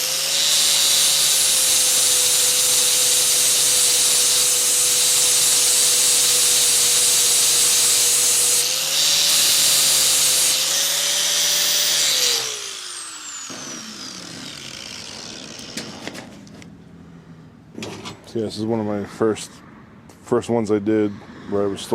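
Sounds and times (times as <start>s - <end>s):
grinder spinning down: 0.0s - 16.1s
angle grinder grinding steel: 0.0s - 16.2s.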